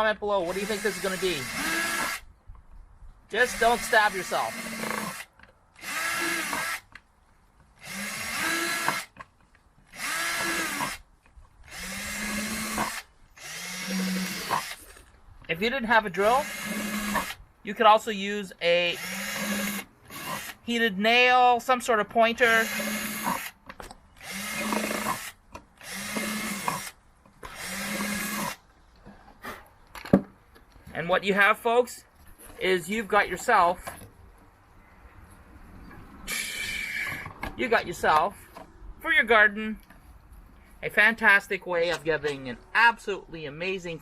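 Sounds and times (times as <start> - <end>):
power drill boring into plastic: 0.5 - 2.2, 3.4 - 6.8, 7.8 - 9.1, 9.9 - 11.0, 11.7 - 14.8, 16.3 - 17.4, 19.0 - 20.6, 22.5 - 23.5, 24.2 - 28.6.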